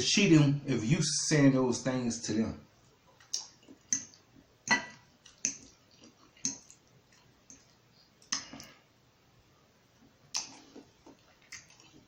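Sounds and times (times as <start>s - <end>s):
person chewing: 2.9s - 8.9s, 10.2s - 12.0s
wet mouth smacks: 3.1s - 4.2s, 5.2s - 8.8s, 10.3s - 12.0s.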